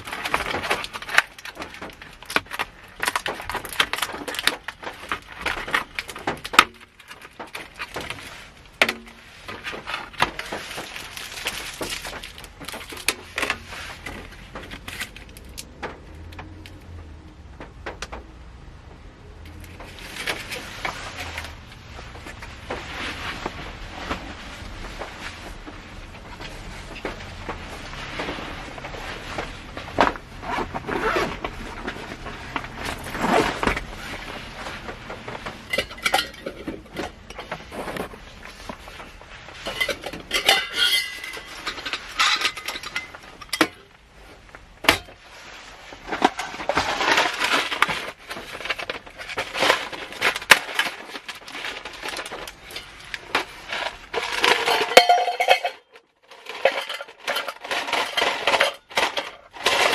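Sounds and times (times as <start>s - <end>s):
rustling: 0.0s - 59.9s
tableware clinking: 54.6s - 55.9s.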